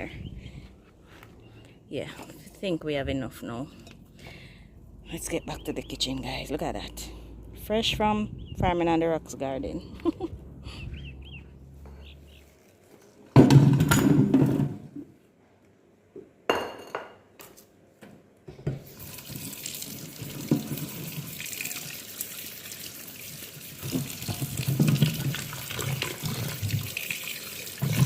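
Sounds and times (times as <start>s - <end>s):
tap water running into sink: 18.8s - 28.0s.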